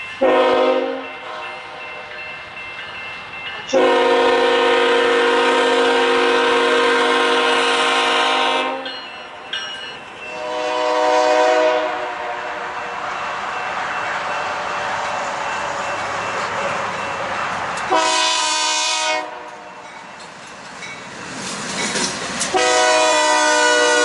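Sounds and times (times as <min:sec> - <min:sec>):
train rushing past on rails: 0:00.0 - 0:24.0
locomotive air horn blasts: 0:00.2 - 0:01.8, 0:03.7 - 0:08.9, 0:10.3 - 0:12.8, 0:17.9 - 0:19.7, 0:22.5 - 0:24.0.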